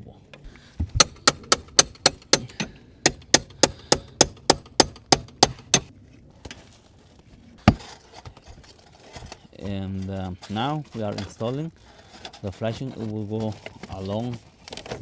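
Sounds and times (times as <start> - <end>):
hammer striking metal nails: 1.0 - 5.9.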